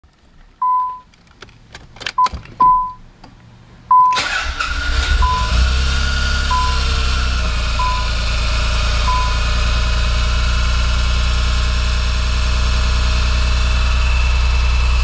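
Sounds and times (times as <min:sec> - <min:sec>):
car engine running: 0:04.7 - 0:15.0
warning chime beeps: 0:05.2 - 0:05.6, 0:06.5 - 0:06.9, 0:07.8 - 0:08.2, 0:09.1 - 0:09.5.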